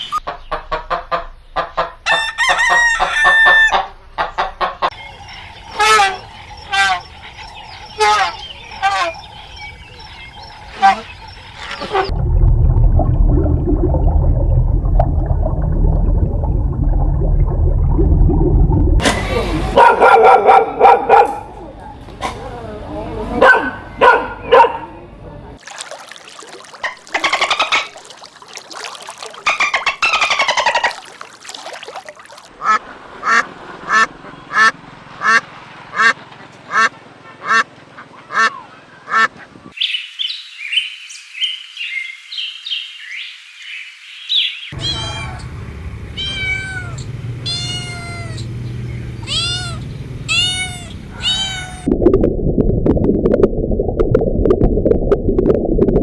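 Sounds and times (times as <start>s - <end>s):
short animal calls: 44.8s - 45.4s, 49.2s - 51.9s
arching animal calls: 44.8s - 51.9s.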